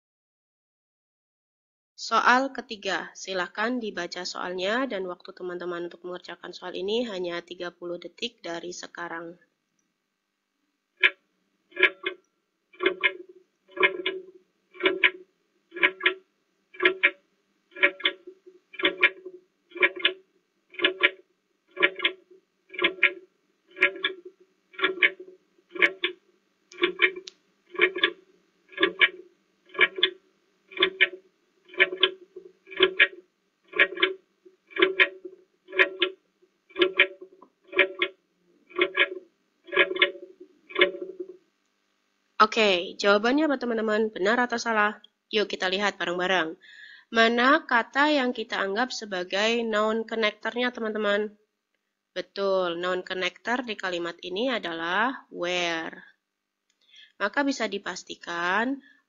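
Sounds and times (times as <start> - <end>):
plucked timer ticks: 11.0 - 16.2, 16.8 - 41.4.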